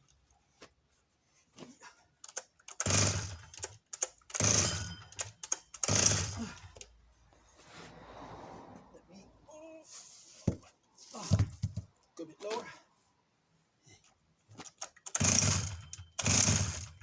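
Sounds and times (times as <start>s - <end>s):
chainsaw recoil starter pulls: 2.2s - 6.9s, 14.6s - 17.0s.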